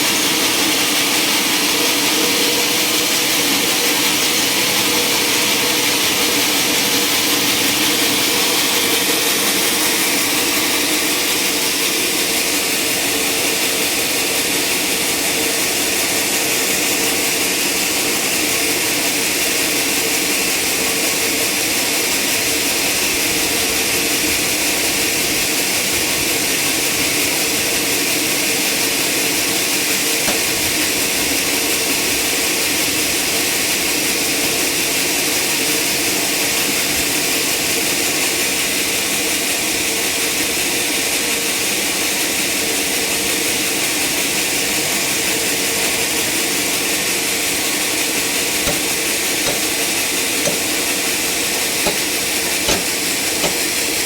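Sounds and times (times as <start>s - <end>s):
sawmill machinery whining: 0.0s - 20.9s, 29.0s - 32.5s, 46.2s - 54.0s.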